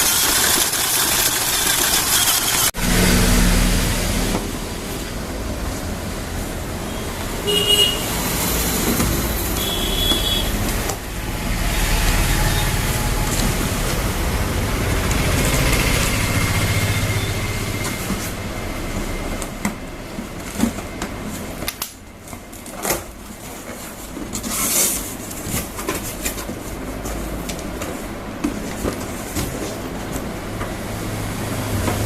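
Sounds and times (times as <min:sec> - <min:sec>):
electric motor and gearbox whirring: 0:00.0 - 0:04.4.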